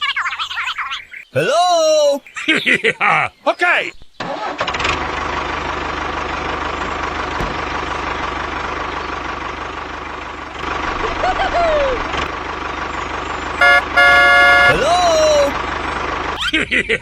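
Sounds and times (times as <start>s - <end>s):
engine idling: 4.2s - 17.0s.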